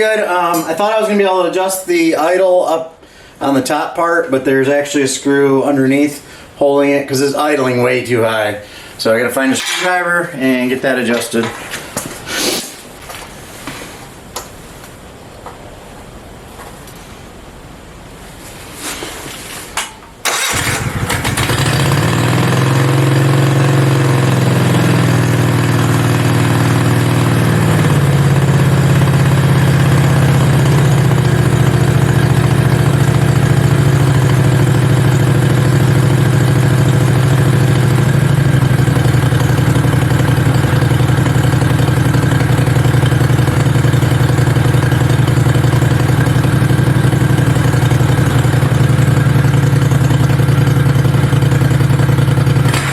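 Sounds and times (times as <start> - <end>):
small engine starting and idling fast: 20.2 - 52.9.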